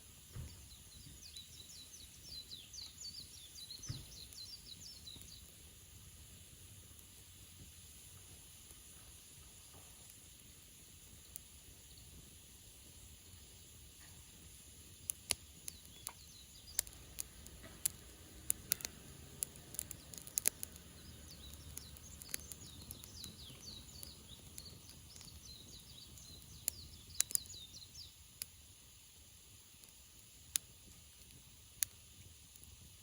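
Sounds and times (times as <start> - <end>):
campfire crackling and popping: 0.0 - 33.0
bird chirping: 0.2 - 5.6, 15.6 - 28.2.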